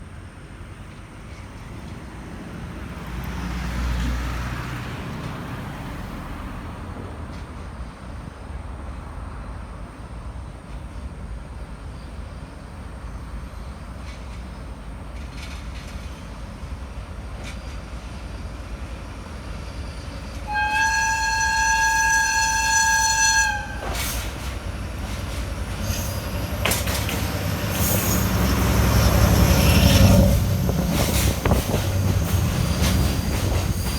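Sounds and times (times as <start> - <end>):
freight train rumble: 0.0 - 33.9
train horn blast: 20.4 - 24.5.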